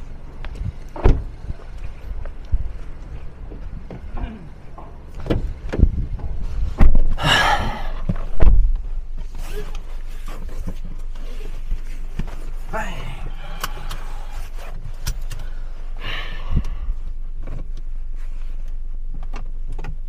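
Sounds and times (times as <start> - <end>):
low car rumble: 0.0 - 20.0
heavy thump: 1.0 - 1.3, 3.5 - 8.8.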